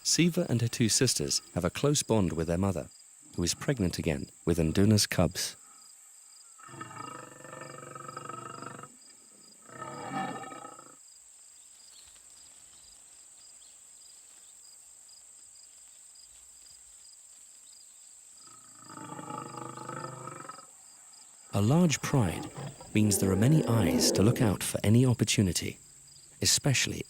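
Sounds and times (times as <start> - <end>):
insects chirring: 0.0 - 27.0
lions calling: 9.6 - 11.0, 18.8 - 20.6, 21.5 - 25.8.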